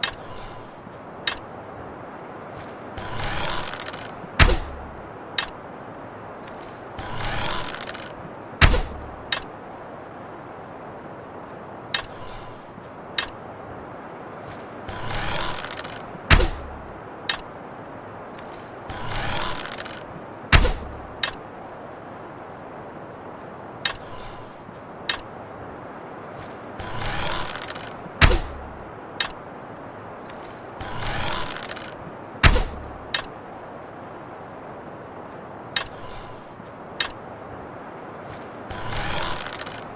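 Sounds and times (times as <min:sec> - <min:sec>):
light clicks: 0:00.0 - 0:01.5, 0:11.5 - 0:13.4, 0:23.8 - 0:25.3
arrow swish: 0:03.1 - 0:04.8, 0:07.2 - 0:09.2, 0:15.2 - 0:16.7, 0:19.5 - 0:21.0, 0:27.0 - 0:28.7, 0:31.0 - 0:32.9
arrow hitting sharply: 0:08.6 - 0:09.0, 0:20.5 - 0:20.9, 0:32.4 - 0:32.8.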